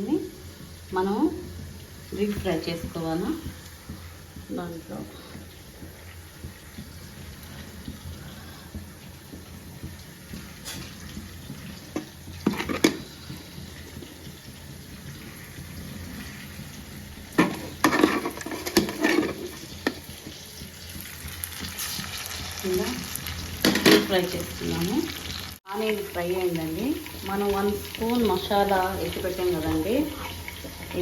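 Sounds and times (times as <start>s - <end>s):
chicken deep-frying in hot oil: 0.0s - 31.0s
utensil knocking against pan: 17.3s - 21.4s.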